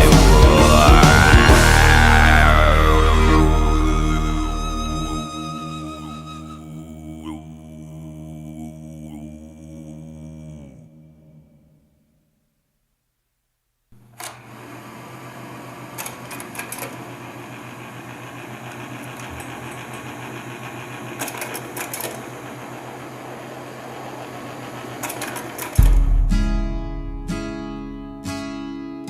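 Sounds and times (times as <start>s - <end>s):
strummed acoustic guitar: 0.0s - 5.2s, 25.8s - 29.0s
machine humming with fast pulse: 0.0s - 6.5s, 17.0s - 26.3s.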